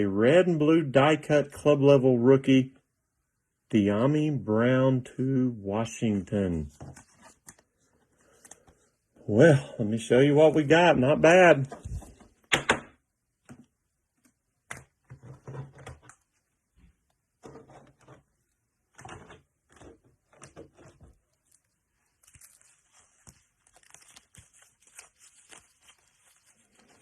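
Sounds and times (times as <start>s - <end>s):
trading cards rustling on table: 6.6s - 9.0s, 11.6s - 12.5s, 13.5s - 27.0s.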